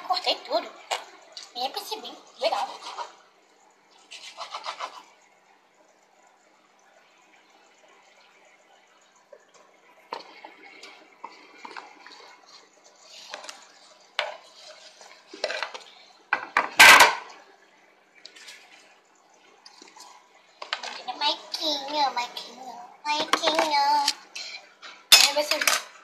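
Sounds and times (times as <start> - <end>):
dishes and cutlery clinking: 24.3 - 26.0.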